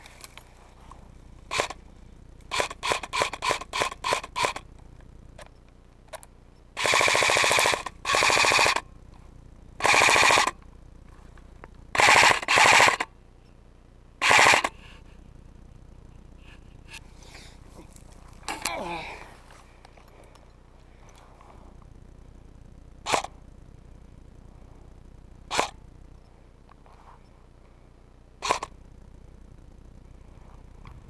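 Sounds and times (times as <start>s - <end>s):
airsoft rifle full-auto bursts: 1.5s - 1.8s, 2.5s - 4.7s, 6.8s - 8.9s, 9.8s - 10.6s, 11.9s - 13.1s, 14.2s - 14.8s, 23.0s - 23.4s, 25.5s - 25.8s, 28.4s - 28.8s
airsoft rifle single shots: 23.1s - 23.3s.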